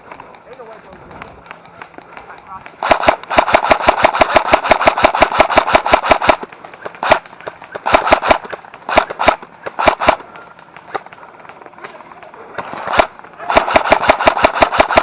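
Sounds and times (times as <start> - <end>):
airsoft rifle firing: 2.6 - 11.2, 12.5 - 15.0.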